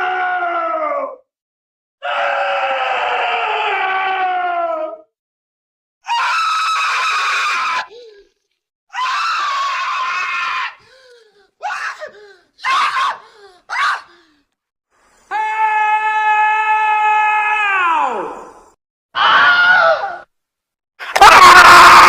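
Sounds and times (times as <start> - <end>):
screams: 2.0 - 5.1, 6.0 - 8.0, 8.9 - 14.2, 15.2 - 20.3, 21.0 - 22.0.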